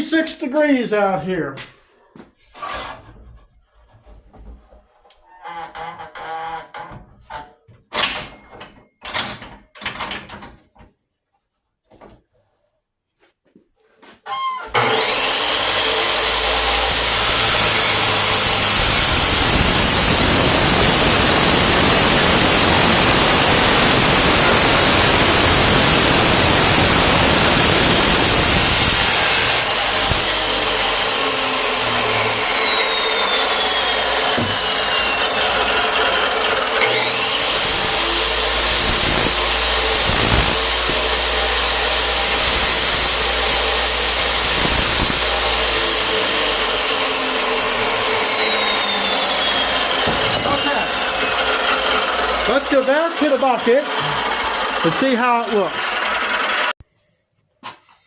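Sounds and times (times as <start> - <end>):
chop saw cutting steel pipe: 14.6 - 56.8.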